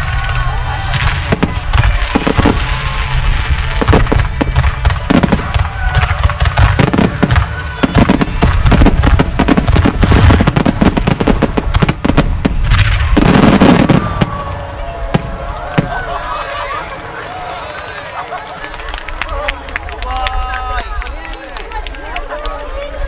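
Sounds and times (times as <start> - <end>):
fireworks cracks and booms: 0.0 - 16.8.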